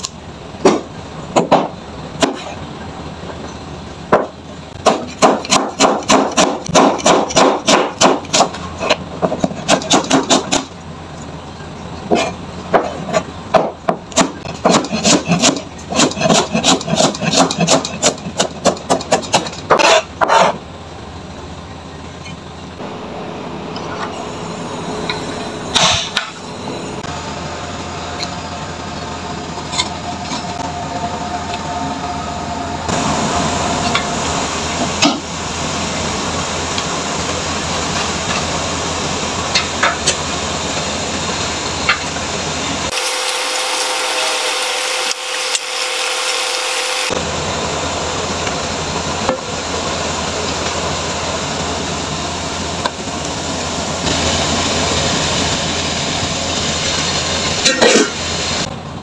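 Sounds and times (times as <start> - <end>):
knife chopping on cutting board: 4.9 - 8.5, 13.6 - 20.5.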